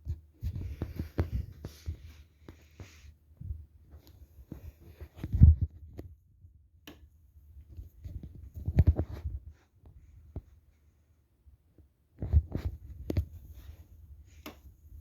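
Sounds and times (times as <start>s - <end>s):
fan wind buffeting microphone: 3.3s - 6.6s.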